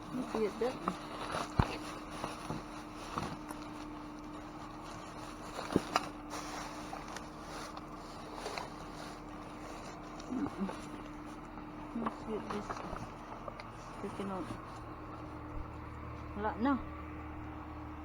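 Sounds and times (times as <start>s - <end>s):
trash rustling: 0.0s - 17.0s.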